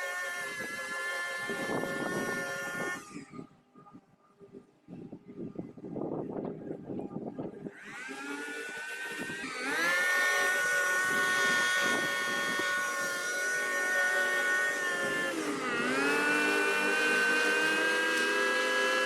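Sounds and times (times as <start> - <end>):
small petrol engine running: 0.0 - 3.2, 7.7 - 19.0.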